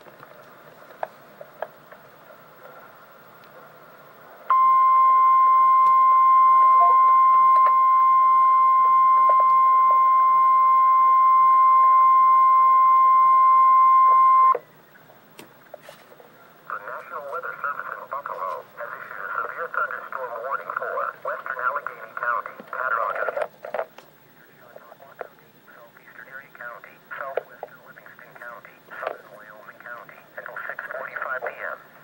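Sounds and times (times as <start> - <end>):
loud steady beep tone: 4.5 - 14.6.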